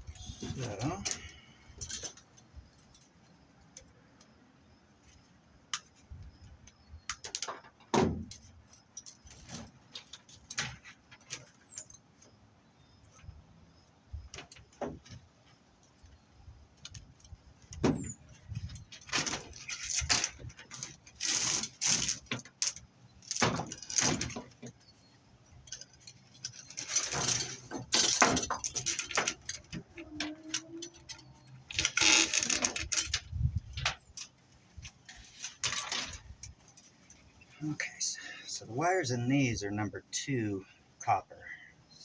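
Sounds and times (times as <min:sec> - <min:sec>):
metal cable clinking and rattling: 0:16.8 - 0:24.8, 0:25.5 - 0:37.4.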